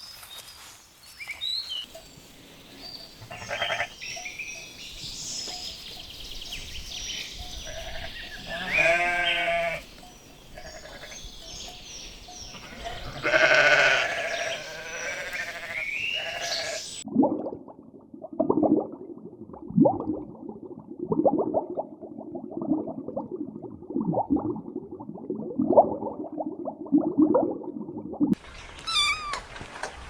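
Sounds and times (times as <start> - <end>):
sheep bleating: 3.3 - 4.0, 7.7 - 9.8, 10.6 - 11.2, 12.6 - 16.8.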